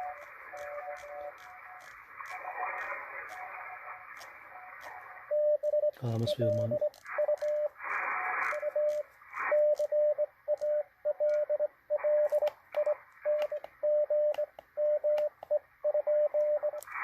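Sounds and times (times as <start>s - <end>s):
bursts of static: 0.0s - 14.1s, 15.1s - 17.0s
receiver hiss: 0.0s - 17.0s
morse code beeps: 5.3s - 7.8s, 8.4s - 16.8s.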